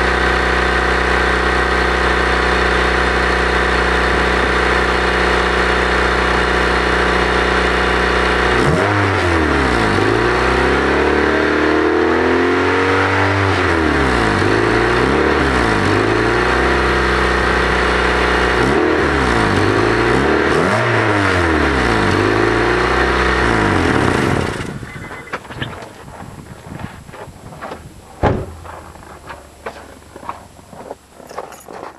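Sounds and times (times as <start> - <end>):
car engine revving with leaky exhaust: 0.0 - 25.0.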